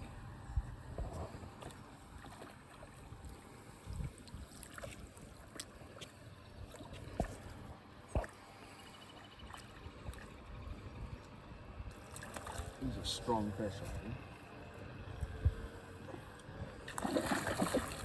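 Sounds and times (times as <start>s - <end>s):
river water running: 11.2s - 15.0s, 15.8s - 18.0s.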